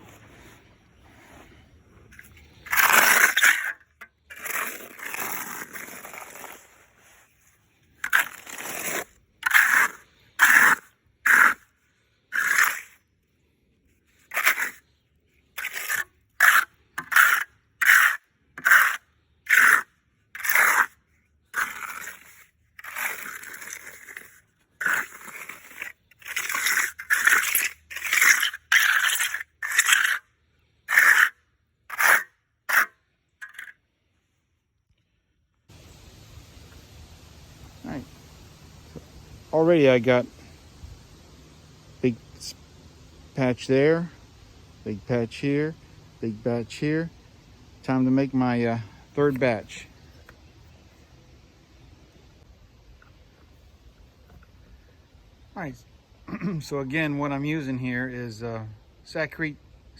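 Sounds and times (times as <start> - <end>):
trowel scraping on concrete: 0.0 - 13.0, 13.9 - 33.8.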